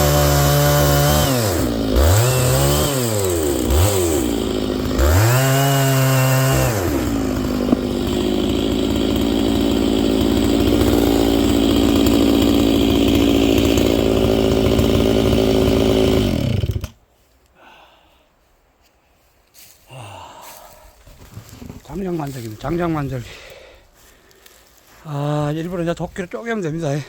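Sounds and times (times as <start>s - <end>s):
chainsaw ripping a log: 0.0s - 17.0s.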